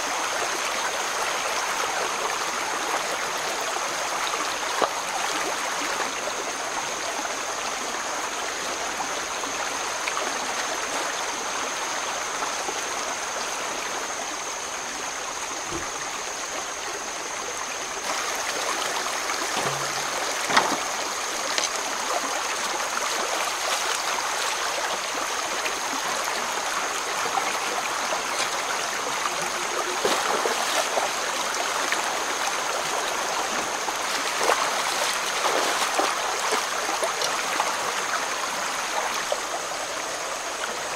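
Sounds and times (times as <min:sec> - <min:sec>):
stream running over rocks: 0:00.0 - 0:40.9
short knocks: 0:19.5 - 0:20.9.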